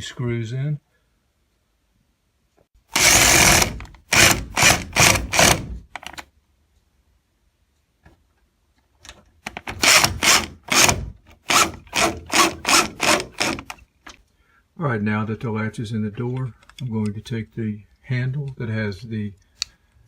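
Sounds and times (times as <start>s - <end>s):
screwdriver driving screws: 2.9s - 6.2s, 9.5s - 13.8s.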